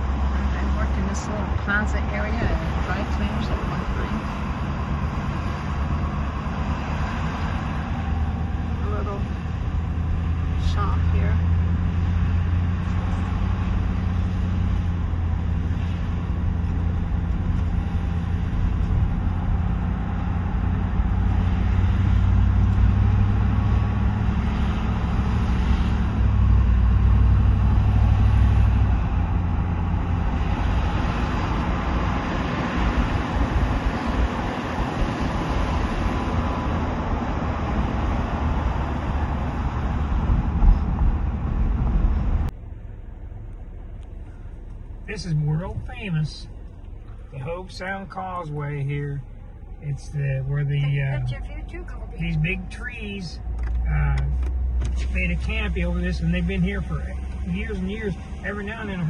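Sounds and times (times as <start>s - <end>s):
car road noise drone: 0.0s - 59.0s.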